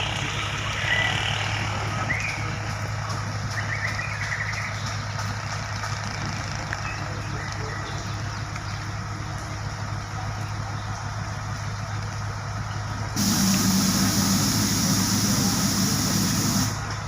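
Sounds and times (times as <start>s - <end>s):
truck diesel engine running: 0.0s - 17.0s
loud hiss: 13.2s - 16.9s.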